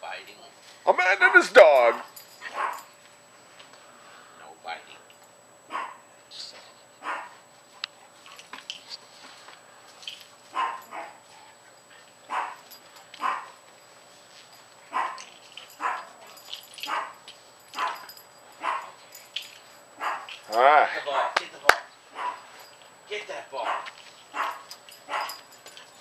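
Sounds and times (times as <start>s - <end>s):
dog barking: 1.3s - 2.9s, 5.7s - 6.0s, 7.0s - 7.4s, 10.5s - 11.2s, 12.3s - 12.6s, 13.2s - 13.6s, 14.9s - 17.2s, 17.8s - 19.0s, 20.0s - 20.4s, 21.1s - 21.4s, 22.1s - 22.6s, 23.6s - 25.5s.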